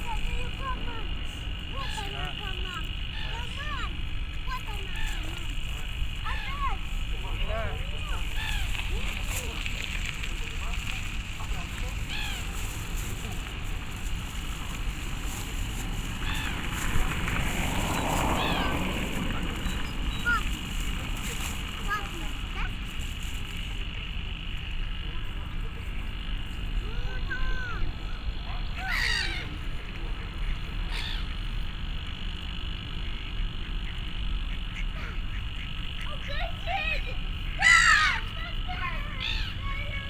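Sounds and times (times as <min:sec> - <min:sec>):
frog croak: 0:00.0 - 0:39.8
bird calling: 0:00.0 - 0:40.0
wind rumble on microphones: 0:02.8 - 0:24.1.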